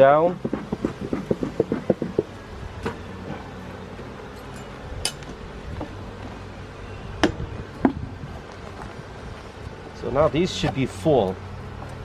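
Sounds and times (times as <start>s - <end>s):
honeybees humming: 0.0s - 12.0s.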